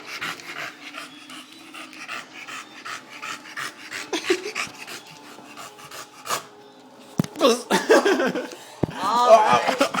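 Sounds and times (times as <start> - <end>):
dog panting: 0.0 - 6.6.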